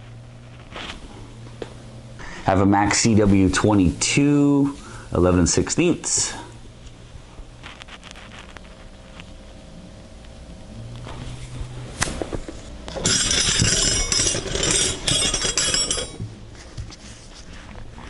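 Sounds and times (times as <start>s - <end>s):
metal wrenches clinking and rattling: 12.9s - 16.2s.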